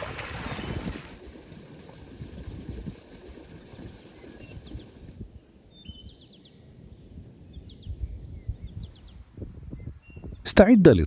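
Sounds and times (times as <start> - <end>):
wind rumble on microphone: 0.0 - 10.5
small birds chirping: 4.0 - 6.6.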